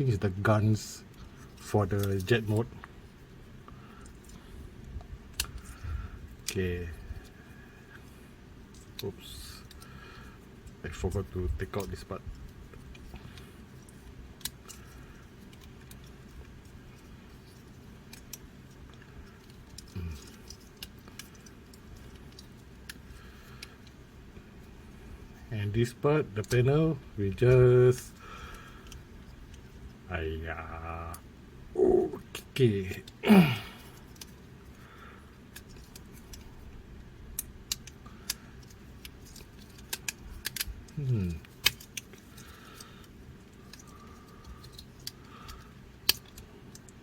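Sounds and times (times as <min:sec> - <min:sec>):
toy parts clicking and tapping: 0:01.5 - 0:02.7, 0:10.6 - 0:24.0, 0:33.9 - 0:34.8, 0:35.4 - 0:36.7, 0:37.3 - 0:47.0.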